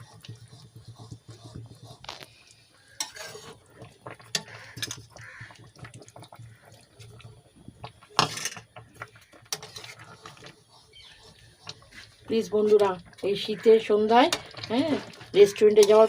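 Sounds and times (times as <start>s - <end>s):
spoon scraping and knocking pan: 0.0s - 2.2s, 2.9s - 6.0s, 8.1s - 13.0s
liquid sloshing in pot: 0.0s - 16.0s.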